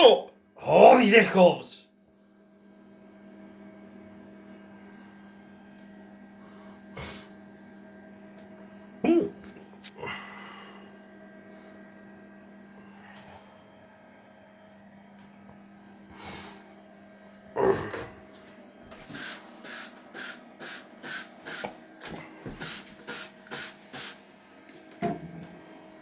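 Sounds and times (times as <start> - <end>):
steady low hum: 0.0 - 26.0
spray bottle squirting: 19.1 - 21.7, 22.6 - 24.2
knock: 25.0 - 25.4.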